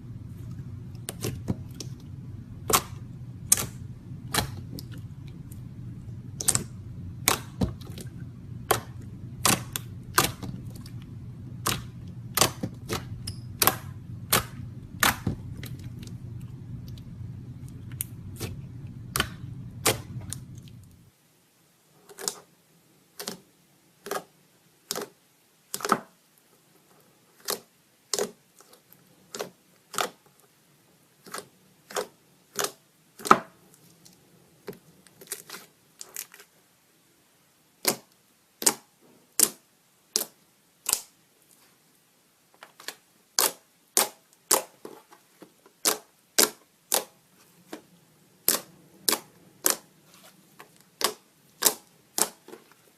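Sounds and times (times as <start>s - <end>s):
low hum: 0.0s - 21.1s
slime popping and clicking: 2.7s - 5.6s, 6.3s - 8.1s, 8.7s - 16.2s.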